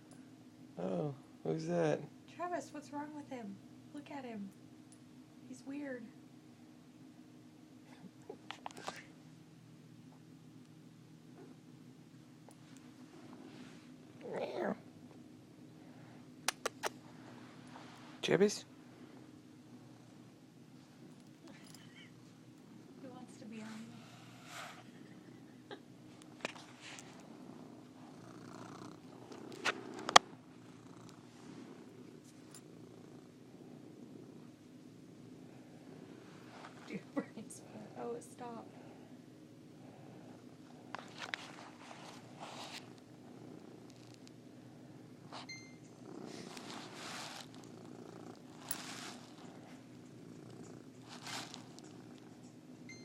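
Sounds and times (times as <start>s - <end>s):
cat purring: 11.3s - 53.0s
sharp clicks: 16.4s - 17.0s.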